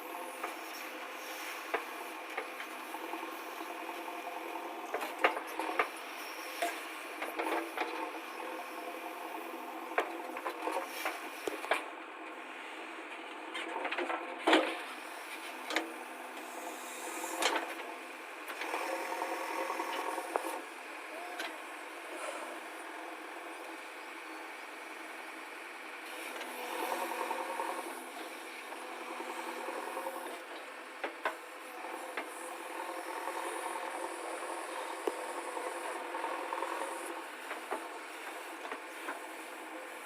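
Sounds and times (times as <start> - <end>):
backhoe engine running: 0.0 - 40.0
knocks and scraping clatter: 13.1 - 15.9.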